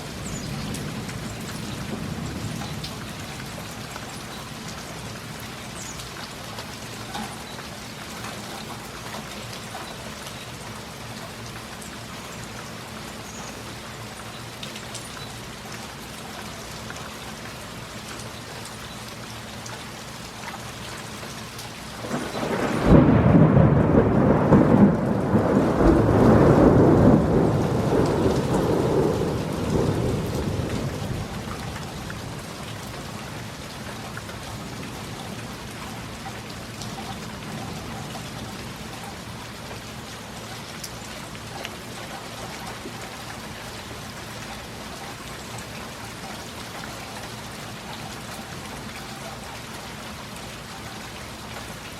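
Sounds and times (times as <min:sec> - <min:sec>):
heavy rain falling: 0:00.0 - 0:51.9
thunder crack and rumble: 0:22.0 - 0:32.6.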